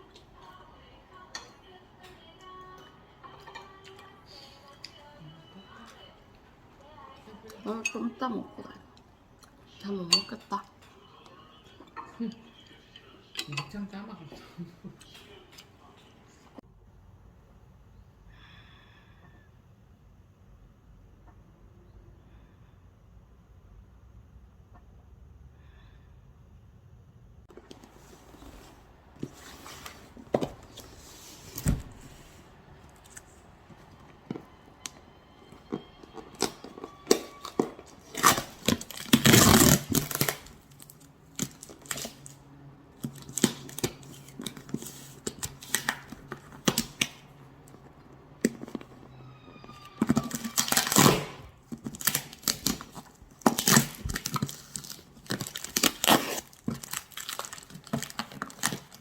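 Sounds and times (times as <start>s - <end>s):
peel tearing by hand: 38.1s - 40.5s, 50.3s - 57.6s.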